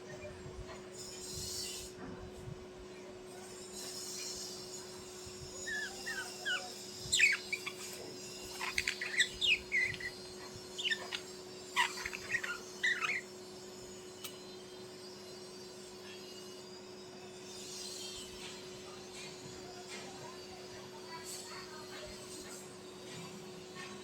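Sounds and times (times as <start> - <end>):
bird chirping: 5.6 - 13.3.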